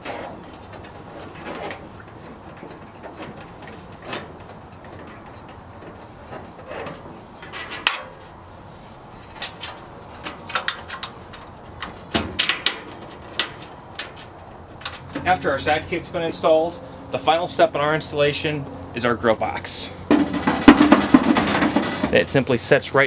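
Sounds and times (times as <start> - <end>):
metal parts clicking and knocking: 9.3 - 15.3.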